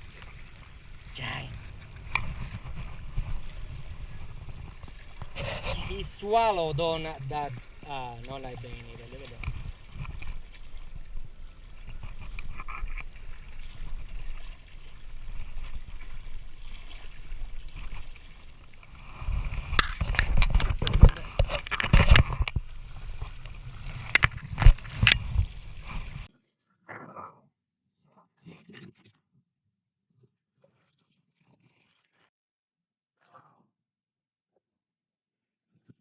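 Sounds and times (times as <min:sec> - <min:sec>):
wind rumbling on microphone: 0:00.0 - 0:06.4, 0:09.3 - 0:18.0, 0:18.8 - 0:26.3
water-like noise: 0:00.0 - 0:27.2, 0:30.1 - 0:32.3.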